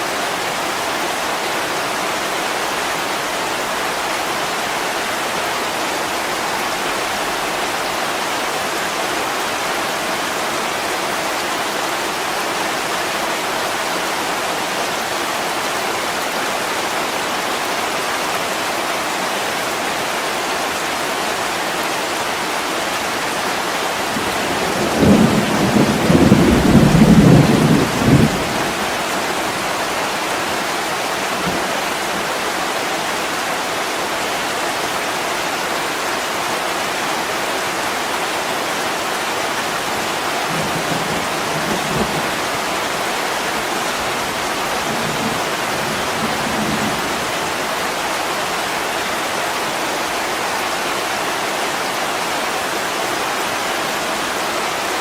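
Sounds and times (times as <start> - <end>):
heavy rain against window: 0.1 - 51.0
low roll of thunder: 24.5 - 28.8.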